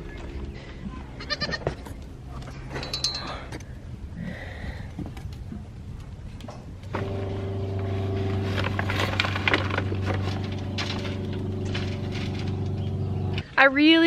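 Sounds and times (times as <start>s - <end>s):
rustling and clicks: 4.9s - 13.5s.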